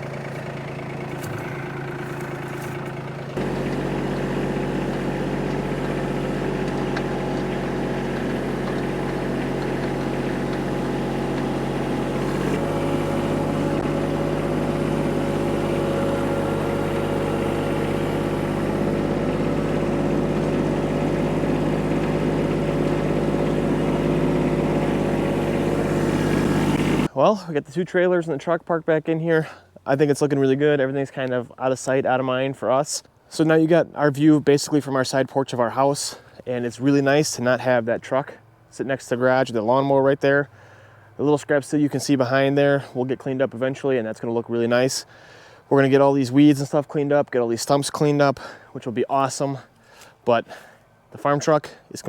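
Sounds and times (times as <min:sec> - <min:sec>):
tractor engine running: 0:00.0 - 0:27.1.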